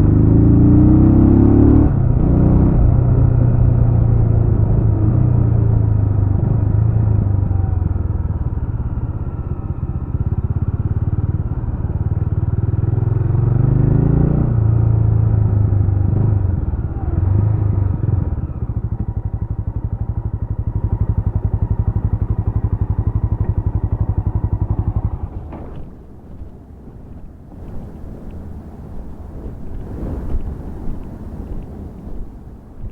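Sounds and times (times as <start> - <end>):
motorcycle engine revving and idling: 0.0 - 32.9
faint engine ticks: 20.6 - 32.9.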